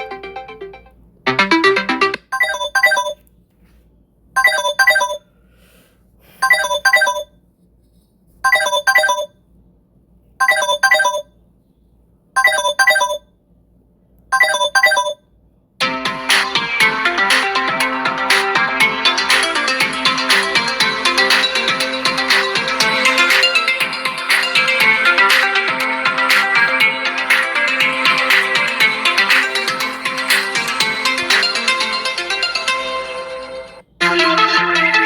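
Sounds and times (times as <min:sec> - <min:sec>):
electronic double ring ringtone: 0:00.0 - 0:03.2, 0:04.4 - 0:05.2, 0:06.4 - 0:07.3, 0:08.5 - 0:09.3, 0:10.4 - 0:11.2
other ringtones: 0:00.0 - 0:03.2, 0:04.4 - 0:05.2, 0:06.4 - 0:07.2, 0:08.4 - 0:09.3, 0:10.4 - 0:11.2, 0:12.4 - 0:13.2, 0:14.4 - 0:15.2, 0:15.8 - 0:35.0.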